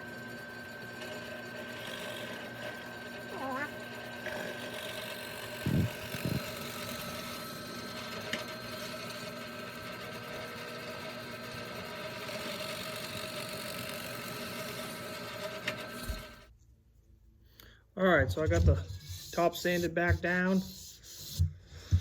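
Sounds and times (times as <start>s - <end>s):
drill press motor running: 0.0s - 16.5s.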